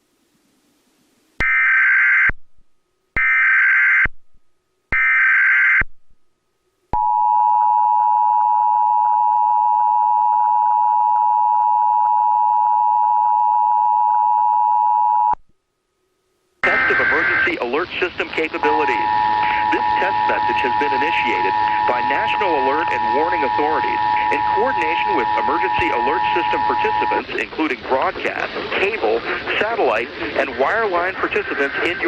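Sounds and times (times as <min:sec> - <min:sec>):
digital data bursts: 0:16.6 - 0:32.0
two-tone attention signal: 0:18.4 - 0:27.4.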